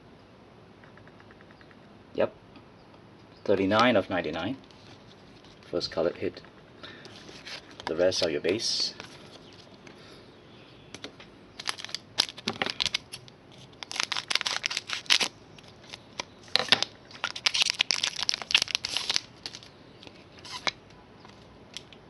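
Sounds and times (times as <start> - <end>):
cards being handled: 7.0 - 10.0, 11.0 - 21.9
wrapper tearing and crinkling: 11.6 - 19.7, 20.4 - 20.8.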